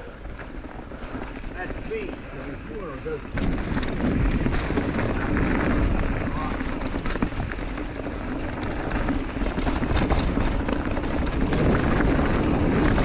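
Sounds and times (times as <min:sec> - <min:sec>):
bike tyres clicking over rocks: 0:00.0 - 0:13.0
wind buffeting microphone: 0:00.0 - 0:13.0.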